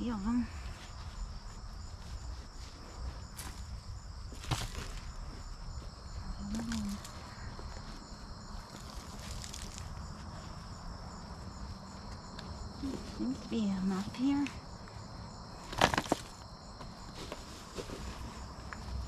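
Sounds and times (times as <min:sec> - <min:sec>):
crickets chirping: 0:00.0 - 0:19.0
hands digging in dry soil: 0:00.6 - 0:11.0.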